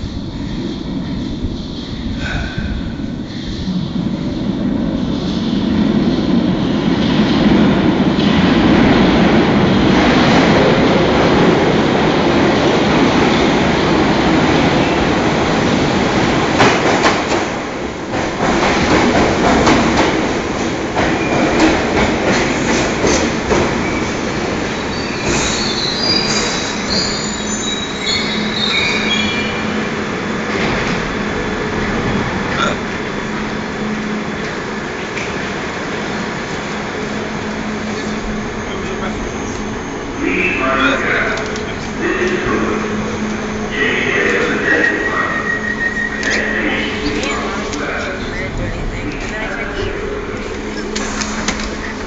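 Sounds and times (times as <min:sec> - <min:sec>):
train wheels rumbling on rails: 0:00.0 - 0:52.0
wheel squeal: 0:45.2 - 0:46.6.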